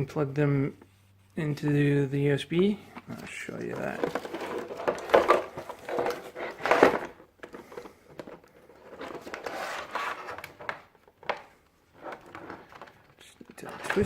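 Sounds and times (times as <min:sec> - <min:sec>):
packaging rustling and knocking: 0:03.0 - 0:13.0.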